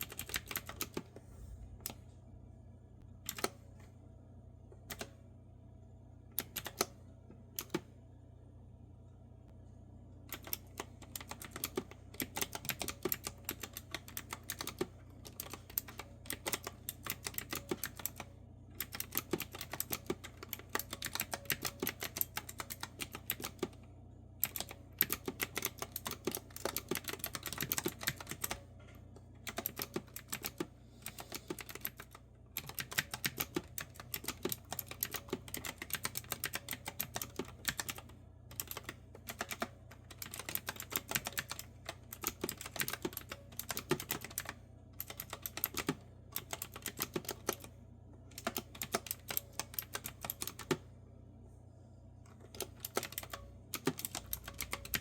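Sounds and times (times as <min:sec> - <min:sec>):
fast typing on clicky keyboard: 0:00.0 - 0:01.1, 0:06.4 - 0:06.9, 0:10.3 - 0:23.8, 0:24.4 - 0:28.6, 0:29.4 - 0:47.7, 0:48.3 - 0:50.8, 0:52.5 - 0:55.0
faint steady hum: 0:00.0 - 0:55.0.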